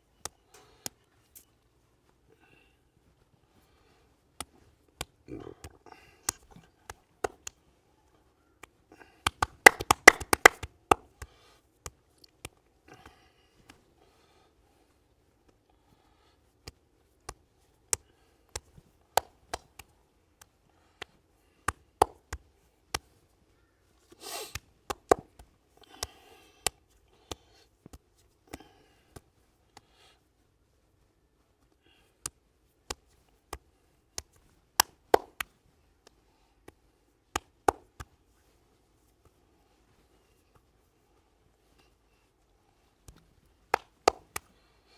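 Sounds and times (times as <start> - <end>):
hands tapping and clicking: 4.4 - 7.6, 8.6 - 13.8, 16.6 - 23.2, 24.5 - 29.9, 32.2 - 38.2, 43.0 - 44.5
hands rubbing over hair: 9.3 - 10.7.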